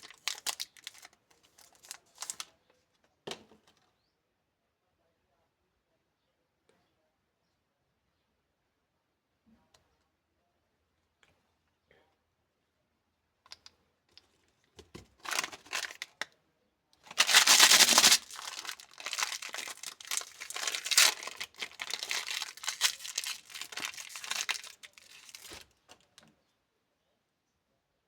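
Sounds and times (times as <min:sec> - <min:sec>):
candy wrapper crinkling: 0:00.0 - 0:02.5, 0:15.2 - 0:16.2, 0:17.0 - 0:25.7
wrapper light clicks: 0:00.0 - 0:02.5, 0:15.2 - 0:16.2, 0:17.1 - 0:26.0
wrapper ripping: 0:00.0 - 0:02.5, 0:15.2 - 0:16.1, 0:17.1 - 0:25.7.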